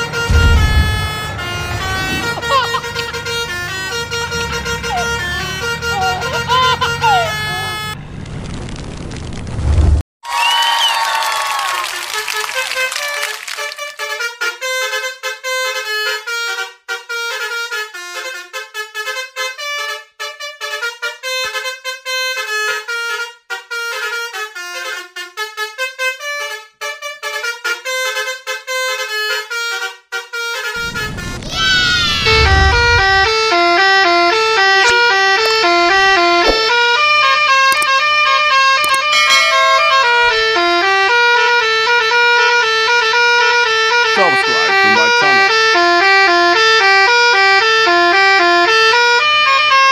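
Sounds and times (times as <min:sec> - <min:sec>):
low boom: 0:00.0 - 0:02.5, 0:30.8 - 0:33.4
multi-tone horn playing tune: 0:00.0 - 0:08.0, 0:12.0 - 0:31.3, 0:32.2 - 0:49.9
falling sweep: 0:00.2 - 0:05.2.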